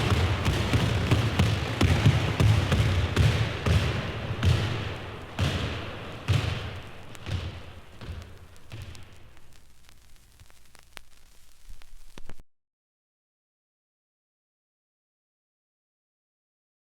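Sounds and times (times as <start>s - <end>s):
dull thumps with noise rush: 0.0s - 12.4s
steady hiss: 0.0s - 12.4s.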